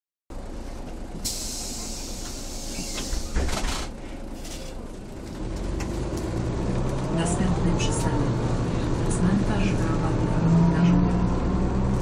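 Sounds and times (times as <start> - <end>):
diesel bus engine pulling away: 0.3 - 12.0
bus doors shutting clunk: 0.9 - 4.9
bus doors hissing air: 1.2 - 4.6.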